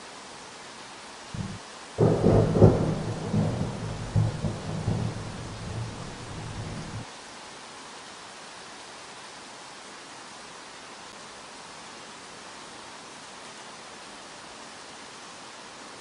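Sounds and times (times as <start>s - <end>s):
steady rain hiss: 0.0s - 16.0s
thunderclap and rolling rumble: 1.4s - 7.0s.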